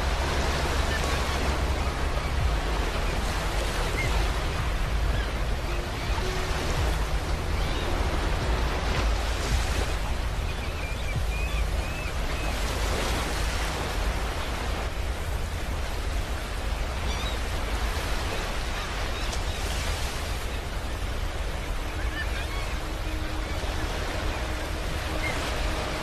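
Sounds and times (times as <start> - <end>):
ocean waves breaking on shore: 0.0 - 26.0.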